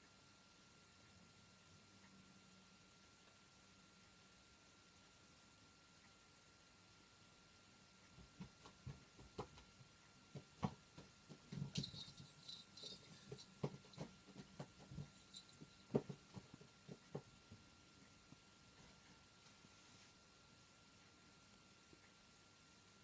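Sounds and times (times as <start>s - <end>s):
faint clicks and rustles: 8.0s - 20.2s.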